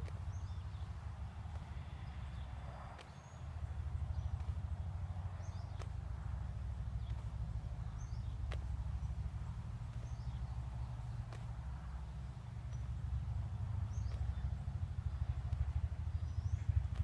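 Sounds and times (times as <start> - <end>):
wind buffeting microphone: 0.0 - 17.0
soft ticks: 9.8 - 11.7.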